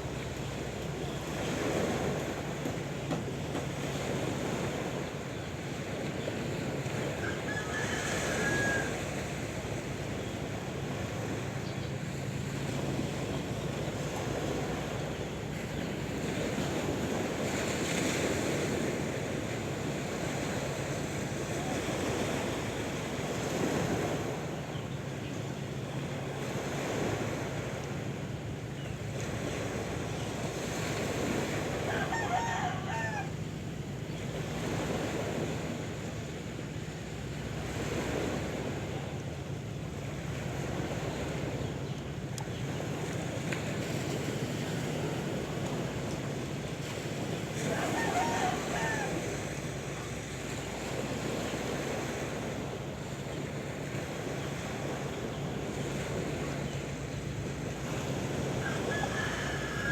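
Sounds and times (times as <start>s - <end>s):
sea waves surging on shore: 0.0s - 59.9s
rooster crowing: 7.2s - 9.4s, 31.8s - 33.4s, 47.6s - 49.6s, 58.5s - 59.9s.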